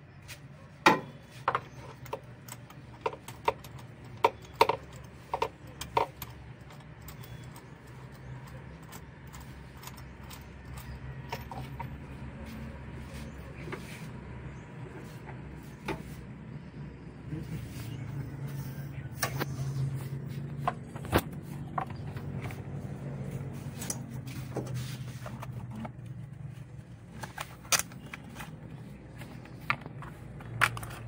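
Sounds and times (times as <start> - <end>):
steady low hum: 0.0 - 31.0
metal tools clinking and knocking: 1.0 - 12.2, 27.2 - 31.0.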